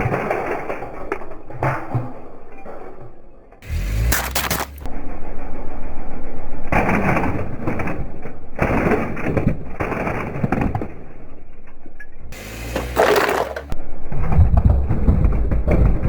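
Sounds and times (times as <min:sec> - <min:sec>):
tyre crunching an object: 0:03.7 - 0:04.9
low rumble: 0:04.1 - 0:08.7, 0:13.6 - 0:16.0.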